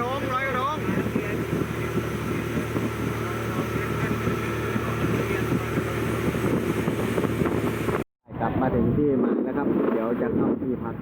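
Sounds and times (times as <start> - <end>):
motorboat engine cruising: 0.0 - 8.1
wind buffeting microphone: 0.0 - 11.0.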